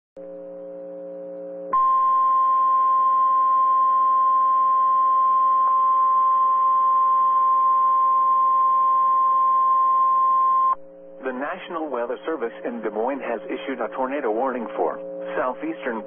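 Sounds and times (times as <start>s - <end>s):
steady high alarm tone: 1.8s - 10.8s.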